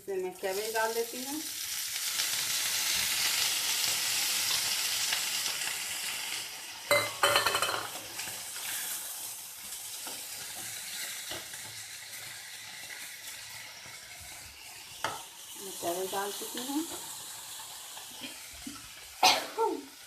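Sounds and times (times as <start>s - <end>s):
vegetables sizzling in oil: 0.0s - 20.0s
metal spoon clattering on pan: 6.9s - 8.0s.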